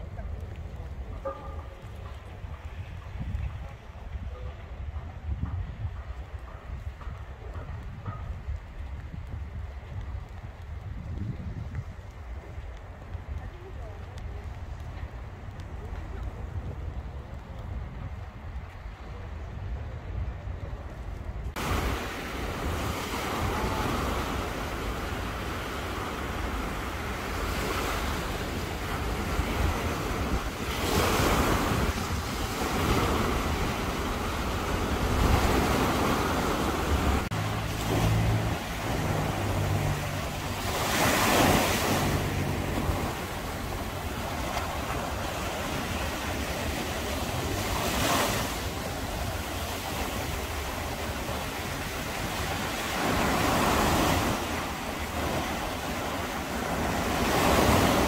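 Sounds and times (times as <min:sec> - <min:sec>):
wind rumbling on microphone: 0:00.0 - 0:58.0
sea waves breaking on beach: 0:21.5 - 0:58.0.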